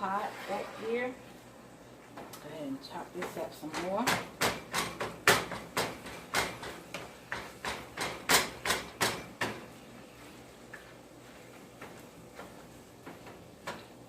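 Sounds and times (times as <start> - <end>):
knife chopping food on board: 3.7 - 9.6.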